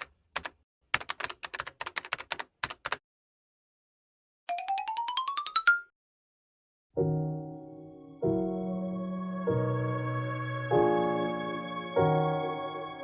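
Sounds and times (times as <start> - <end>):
computer keyboard typing: 0.0 - 3.0.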